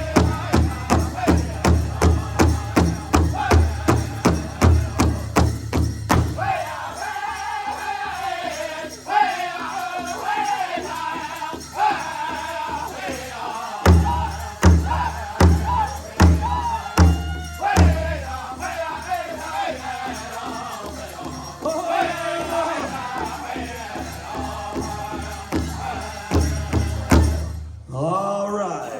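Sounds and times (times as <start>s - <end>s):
singing voices over a beat: 0.0s - 28.9s
heavy low drum hits: 0.2s - 6.5s, 13.9s - 18.3s.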